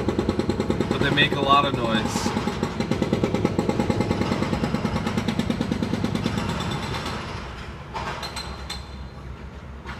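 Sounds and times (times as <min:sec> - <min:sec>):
hydraulic breaker pounding concrete: 0:00.0 - 0:08.6.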